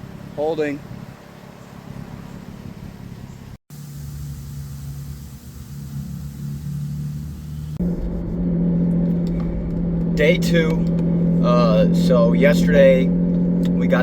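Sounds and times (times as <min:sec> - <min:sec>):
car engine humming: 0:00.0 - 0:14.0.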